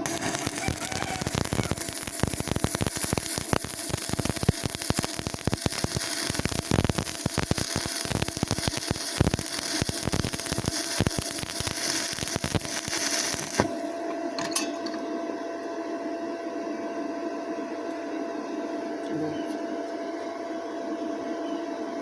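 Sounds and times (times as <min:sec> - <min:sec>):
welding arc crackling: 0:00.0 - 0:14.0.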